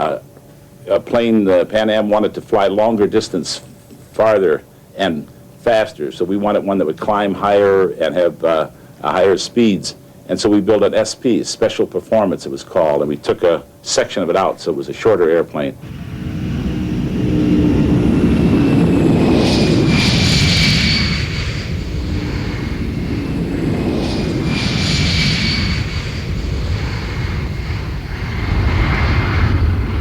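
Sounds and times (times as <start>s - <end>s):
jet engines passing: 0.0s - 30.0s.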